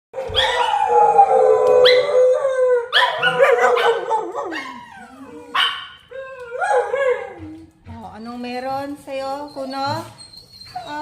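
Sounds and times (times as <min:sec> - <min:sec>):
dogs howling: 0:00.2 - 0:07.8.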